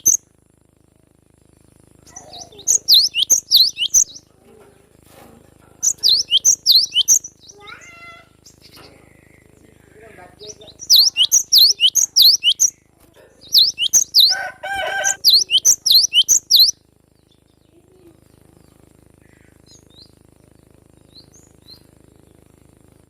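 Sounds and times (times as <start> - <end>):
bird singing sharp sweeping notes: 0.0 - 0.2, 2.1 - 4.3, 5.8 - 7.7, 10.4 - 17.5
faint bird chirps: 0.0 - 1.0, 1.6 - 5.0, 5.8 - 22.5
harsh bird call: 2.1 - 4.2, 5.8 - 12.9, 13.5 - 16.8.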